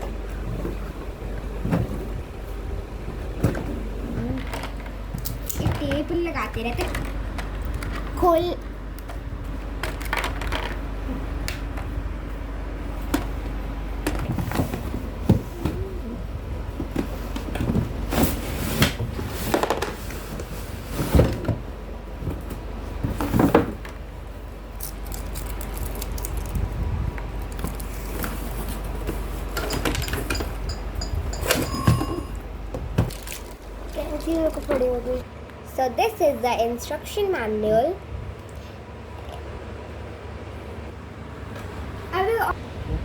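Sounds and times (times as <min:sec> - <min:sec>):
steady low hum: 0:00.0 - 0:43.0
cardboard and plastic rustling: 0:09.1 - 0:11.4, 0:16.6 - 0:24.0, 0:24.8 - 0:30.4, 0:32.8 - 0:35.3.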